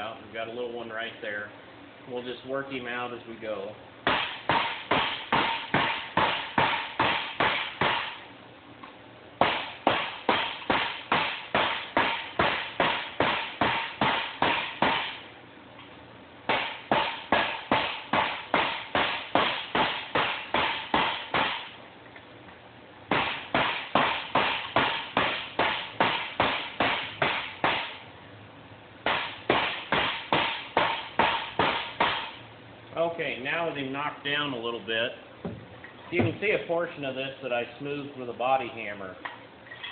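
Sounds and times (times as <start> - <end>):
hammer striking steel tubing: 9.4 - 15.2, 16.5 - 21.8, 23.1 - 28.0, 29.0 - 32.4.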